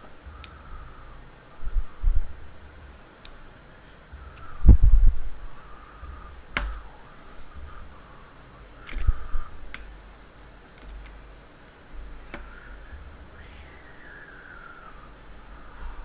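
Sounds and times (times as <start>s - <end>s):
low dull bumps: 4.1s - 13.9s.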